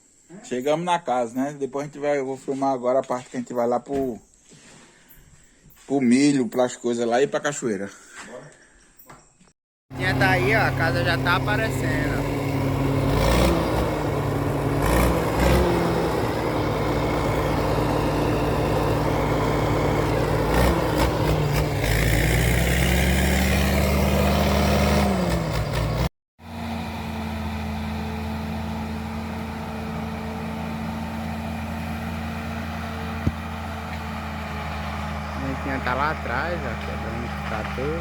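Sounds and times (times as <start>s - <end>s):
vehicle engine running: 9.9s - 38.0s.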